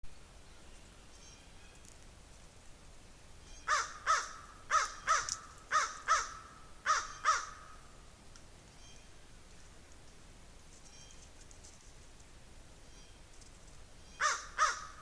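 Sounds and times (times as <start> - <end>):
crow cawing: 3.7 - 7.8, 14.2 - 15.0.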